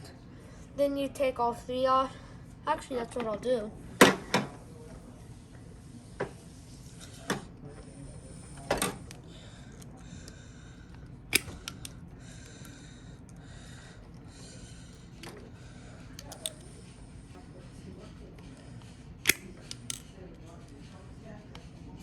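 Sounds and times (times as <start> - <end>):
sharp clicks: 9.8 - 12.6, 16.2 - 16.7, 19.2 - 20.1.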